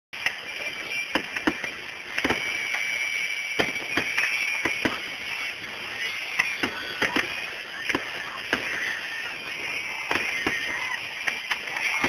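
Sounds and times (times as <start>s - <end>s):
fireworks bangs and pops: 0.2s - 12.0s
high steady whine: 0.2s - 12.0s
steady hiss: 0.2s - 12.0s.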